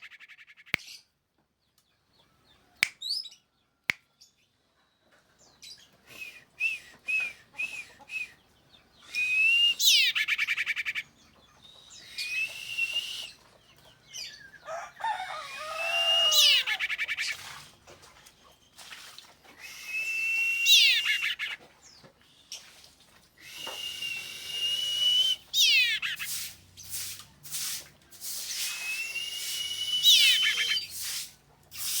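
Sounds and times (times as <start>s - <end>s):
bird whistling call: 6.1s - 8.4s, 9.0s - 13.5s, 14.3s - 17.4s, 19.6s - 21.6s, 23.4s - 26.4s, 28.5s - 31.2s.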